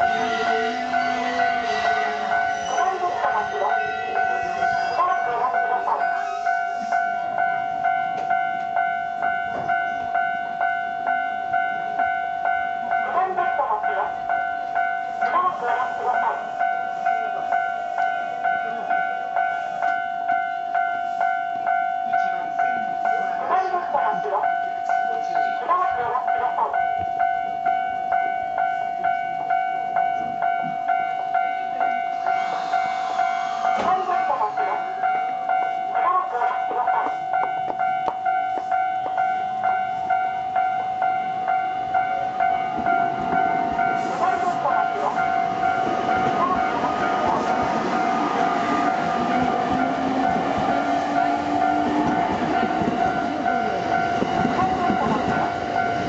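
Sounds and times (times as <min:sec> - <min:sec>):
two-tone electronic crossing bell: 0:00.0 - 0:56.0
train passing hiss and rumble: 0:20.8 - 0:24.5, 0:31.8 - 0:39.2, 0:41.8 - 0:56.0.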